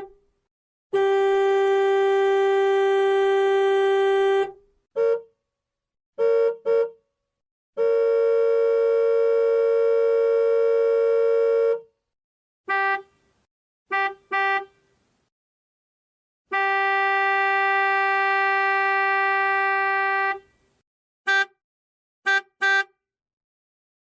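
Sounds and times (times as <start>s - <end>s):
vehicle horn honking: 0.9s - 5.3s, 6.2s - 7.0s, 7.8s - 11.9s, 12.7s - 13.1s, 13.9s - 14.8s, 16.5s - 20.6s, 21.3s - 21.6s, 22.2s - 23.0s.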